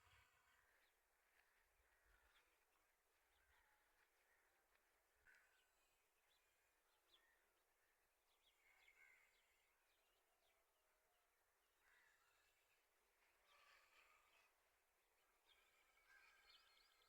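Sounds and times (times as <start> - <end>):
bird chirps: 15.4 - 17.0.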